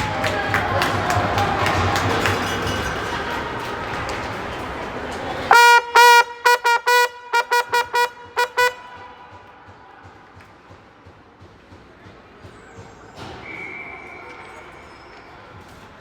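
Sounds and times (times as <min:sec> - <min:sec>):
gym crowd noise: 0:00.0 - 0:16.0
air horn blasts: 0:05.5 - 0:09.4.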